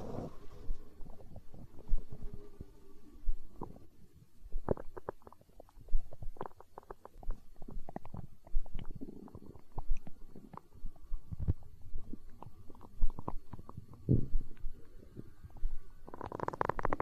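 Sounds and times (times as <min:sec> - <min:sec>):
stomach growling and gurgling: 0:00.0 - 0:17.0.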